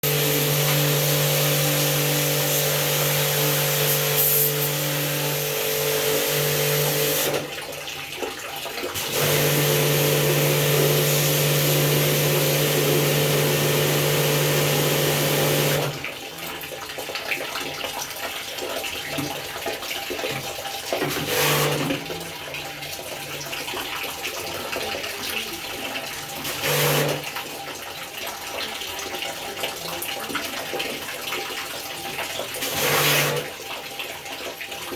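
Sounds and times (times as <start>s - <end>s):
water hissing: 0.0s - 5.0s
water spraying: 0.0s - 7.5s, 8.9s - 16.0s, 32.2s - 33.6s
water pump humming: 0.0s - 34.9s.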